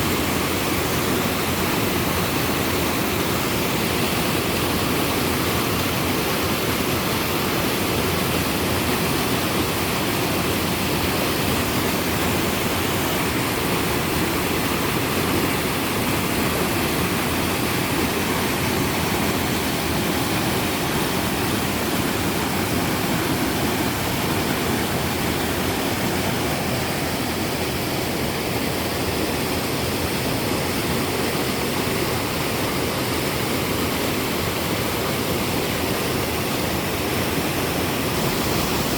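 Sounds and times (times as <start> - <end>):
waterfall rushing: 0.0 - 38.9.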